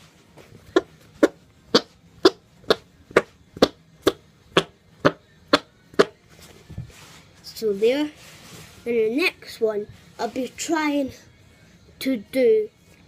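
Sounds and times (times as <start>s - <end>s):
person making fart noises: 0.6s - 6.2s.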